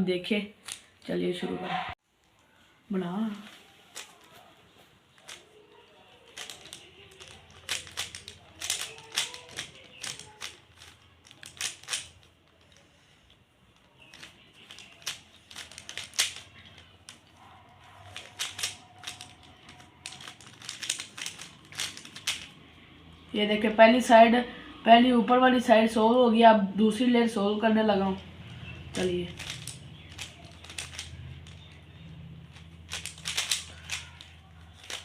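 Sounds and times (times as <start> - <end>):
puzzle cube plastic clicks: 0.6 - 1.0, 6.1 - 13.0, 13.8 - 17.4, 18.0 - 22.6, 28.9 - 35.0.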